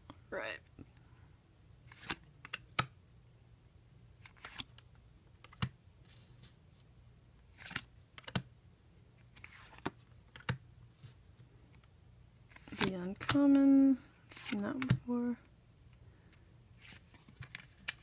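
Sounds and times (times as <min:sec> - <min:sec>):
cards brushing slides: 0:01.9 - 0:02.9
trading cards clicking: 0:07.6 - 0:08.5, 0:09.6 - 0:10.6.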